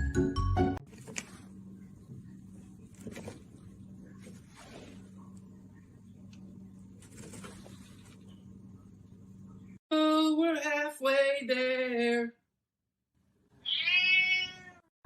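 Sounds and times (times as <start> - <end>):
cat meowing: 13.6 - 14.9
cat yowling: 13.6 - 14.9.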